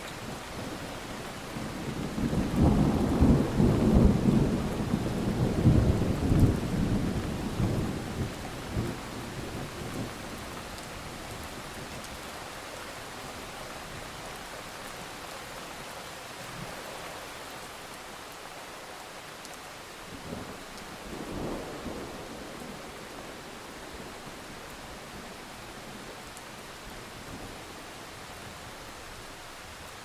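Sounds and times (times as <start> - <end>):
steady rain: 0.0 - 30.0
thunder rumbling: 1.5 - 10.4.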